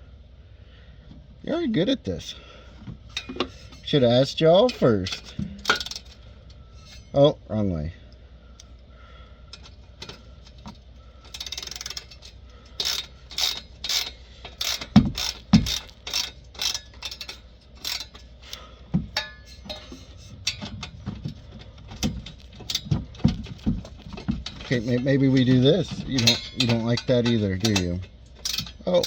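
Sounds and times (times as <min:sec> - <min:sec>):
ratchet wrench clicking: 0:04.7 - 0:06.2, 0:11.3 - 0:18.3, 0:26.2 - 0:29.0
dull knocks: 0:20.7 - 0:24.7.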